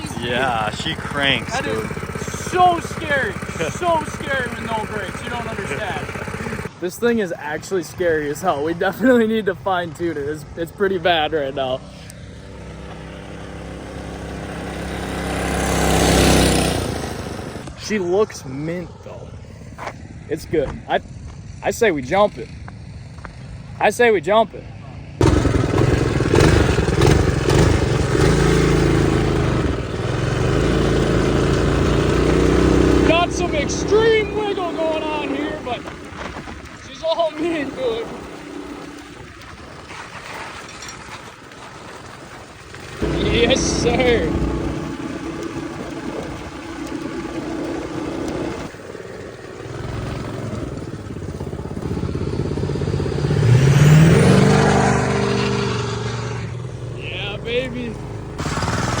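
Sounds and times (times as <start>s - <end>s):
small engine running under throttle: 0.0s - 6.8s, 11.8s - 17.8s, 25.2s - 59.0s.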